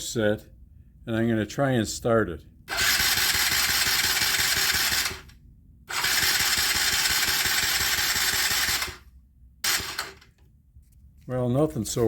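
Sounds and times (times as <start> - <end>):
electric starter cranking engine: 2.7 - 10.3.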